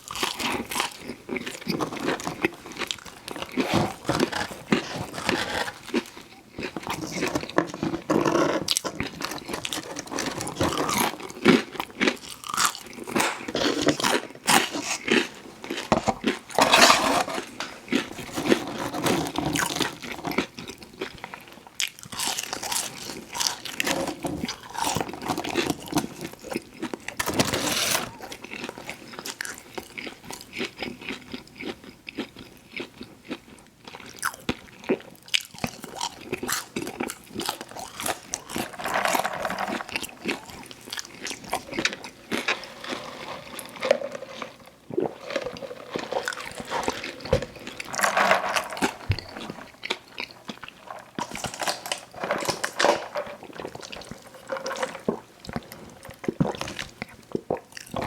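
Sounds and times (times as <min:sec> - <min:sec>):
chewing: 0:28.1 - 0:58.0.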